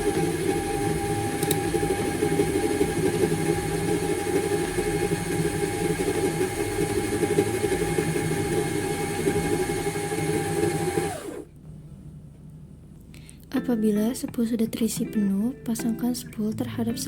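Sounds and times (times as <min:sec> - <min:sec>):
sewing machine motor whirring: 0:00.0 - 0:11.5.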